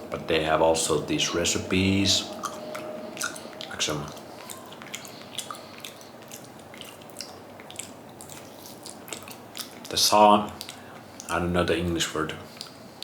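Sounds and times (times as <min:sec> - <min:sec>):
person chewing food: 0:02.3 - 0:11.4, 0:12.5 - 0:13.0.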